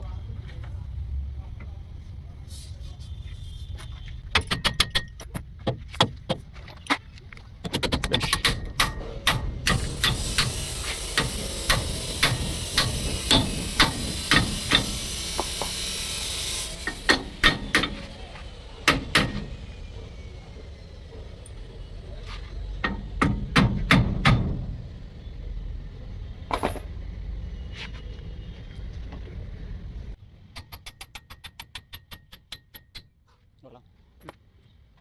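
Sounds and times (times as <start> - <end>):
hammer blows on metal: 8.3 - 19.7
steady hiss: 9.6 - 19.1.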